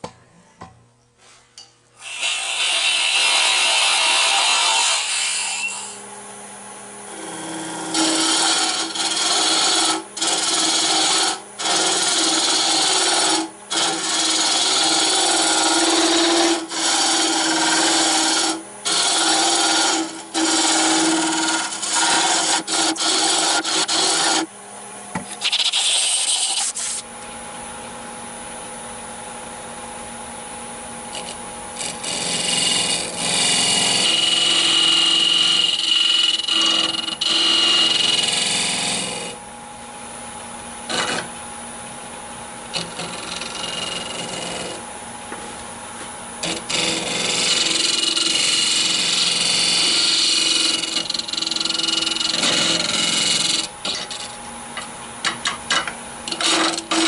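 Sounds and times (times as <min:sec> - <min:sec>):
tool cutting wood on a lathe: 0:02.0 - 0:06.0, 0:07.0 - 0:24.5, 0:25.2 - 0:27.1, 0:31.1 - 0:39.4, 0:40.8 - 0:41.4, 0:42.7 - 0:44.9, 0:46.3 - 0:57.0
lathe humming: 0:02.0 - 0:27.1, 0:28.1 - 0:57.0.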